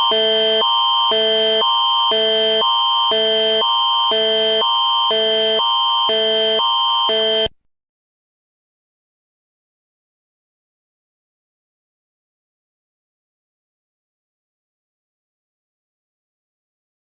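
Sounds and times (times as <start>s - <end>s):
steady high tone: 0.0s - 7.5s.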